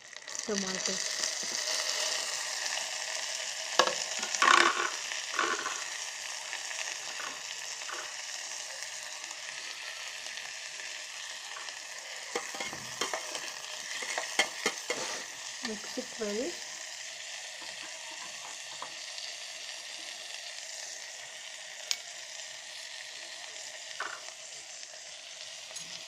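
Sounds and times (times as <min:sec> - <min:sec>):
tomato and onion sizzling in oil: 0:00.0 - 0:26.0
spoon knocking and scraping pan: 0:03.8 - 0:05.8, 0:07.1 - 0:08.2, 0:12.3 - 0:16.0.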